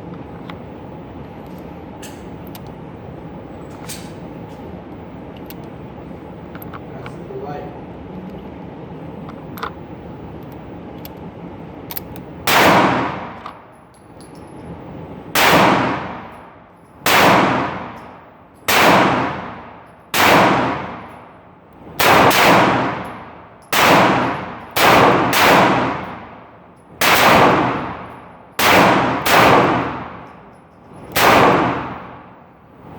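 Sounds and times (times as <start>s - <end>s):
revolver gunshots: 12.4s - 13.4s, 15.3s - 16.3s, 17.0s - 18.0s, 18.7s - 21.1s, 22.0s - 26.4s, 27.0s - 30.3s, 31.1s - 32.4s.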